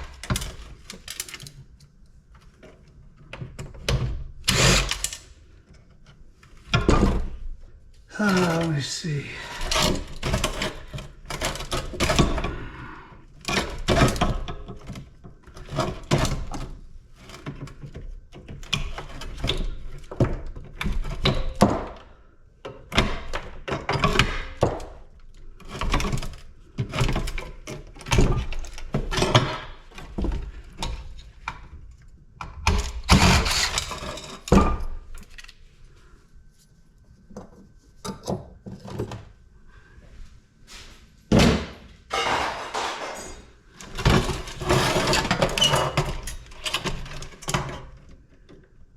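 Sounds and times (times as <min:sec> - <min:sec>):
metal parts clanking when dropped: 0:42.1 - 0:45.4.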